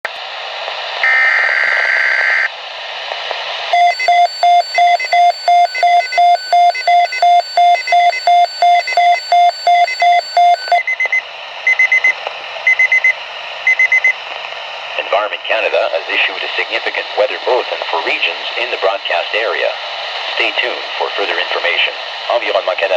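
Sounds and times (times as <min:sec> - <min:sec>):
digital alert-code tones: 0:03.8 - 0:10.8
quick higher beeps: 0:03.8 - 0:10.8
alarm beeping rapidly: 0:03.8 - 0:11.0.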